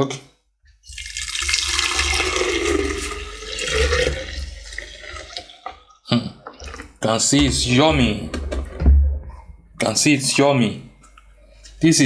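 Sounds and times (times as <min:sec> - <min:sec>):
liquid pouring into jug: 0:00.8 - 0:07.7.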